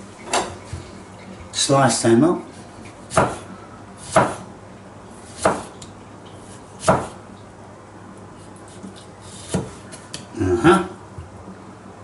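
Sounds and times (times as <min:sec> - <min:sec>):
knife slicing tomatoes: 0:03.1 - 0:04.5, 0:05.2 - 0:07.2, 0:08.4 - 0:10.3.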